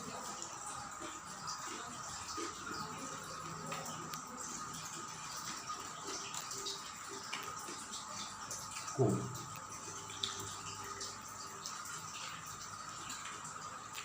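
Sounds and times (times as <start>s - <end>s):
small clicks of eating: 0.1s - 14.0s.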